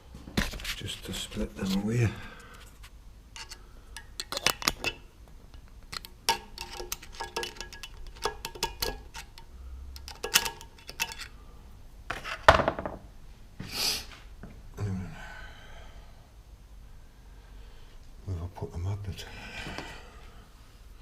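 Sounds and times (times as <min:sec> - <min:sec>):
screwdriver tapping metal parts: 0:03.4 - 0:11.3.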